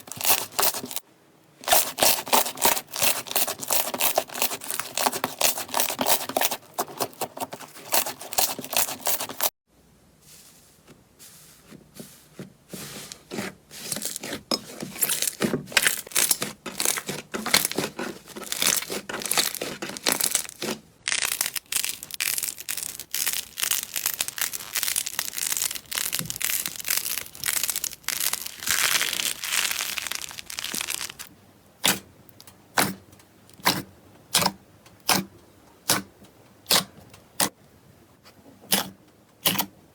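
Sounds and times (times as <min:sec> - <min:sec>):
slime crackling and popping: 0:15.9 - 0:31.3.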